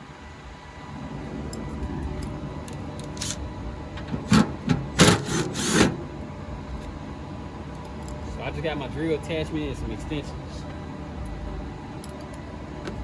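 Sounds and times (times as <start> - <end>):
hard parts scraping: 1.5 - 6.1.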